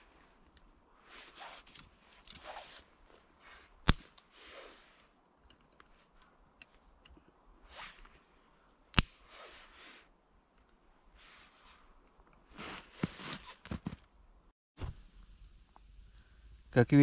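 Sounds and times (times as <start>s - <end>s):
sharp crack of twig: 3.8s - 4.4s, 8.9s - 9.4s.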